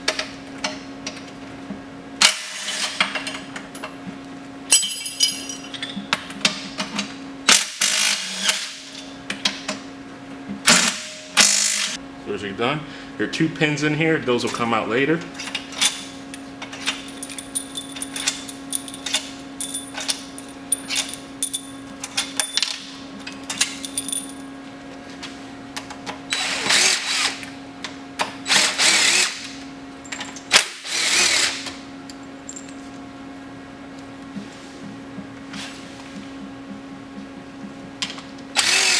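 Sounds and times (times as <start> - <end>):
power tool running in bursts: 10.8 - 12.0, 26.3 - 27.4, 38.6 - 38.9
metal tools clicking and tapping: 16.3 - 22.8, 23.5 - 24.5.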